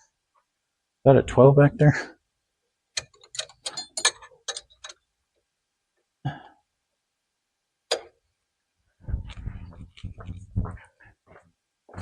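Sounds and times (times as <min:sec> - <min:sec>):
hand tools clicking: 0:03.0 - 0:05.0.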